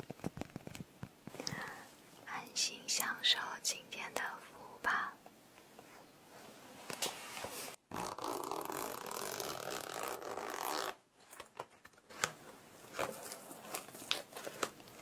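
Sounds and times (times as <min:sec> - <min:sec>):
scratchy zipper-like rasp: 0:07.9 - 0:11.0.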